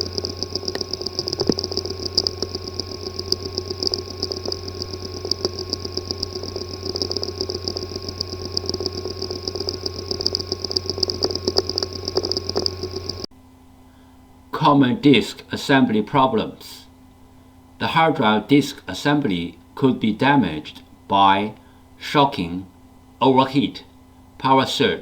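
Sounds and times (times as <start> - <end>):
hard drive ticking: 0.0 - 13.3
hard drive hum and whine: 0.0 - 25.0.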